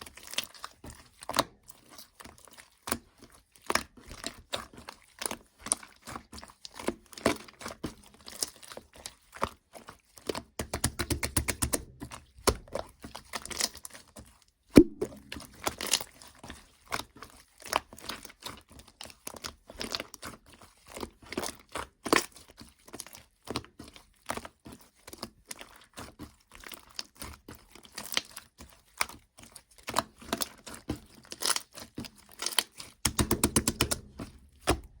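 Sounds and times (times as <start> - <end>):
slime squished by hand: 14.8 - 16.3.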